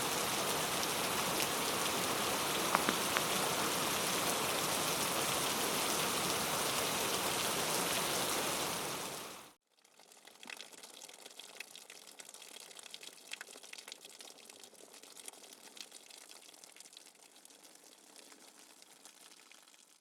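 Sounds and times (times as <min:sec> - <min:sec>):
light rain patter: 0:00.0 - 0:20.0.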